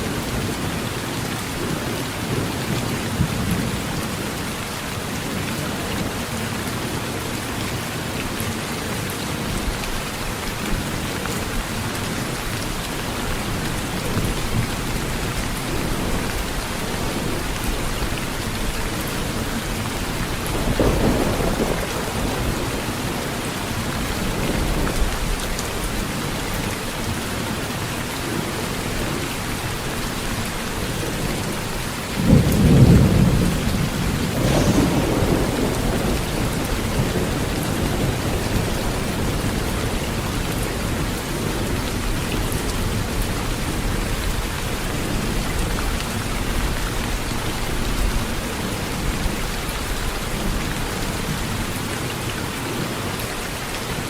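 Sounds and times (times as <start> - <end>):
heavy rain on a tin roof: 0.0 - 54.0
low thunder rumbles: 13.3 - 25.4, 32.2 - 50.6.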